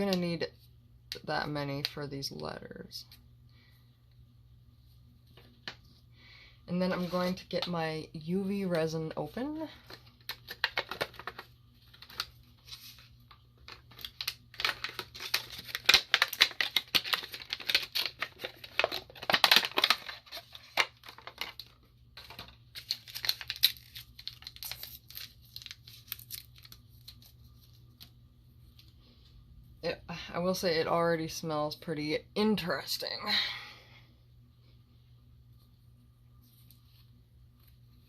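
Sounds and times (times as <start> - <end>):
packaging being torn and crinkled: 10.2 - 28.1.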